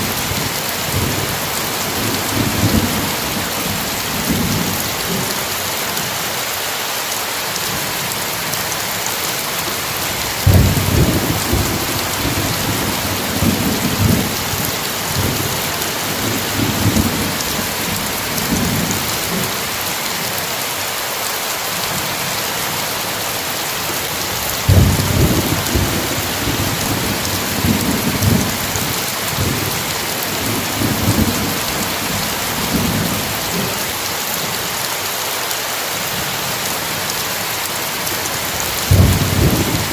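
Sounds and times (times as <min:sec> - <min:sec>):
heavy rain: 0:00.0 - 0:39.9
thunder rumbling: 0:10.3 - 0:19.5, 0:24.6 - 0:33.7, 0:38.6 - 0:39.9.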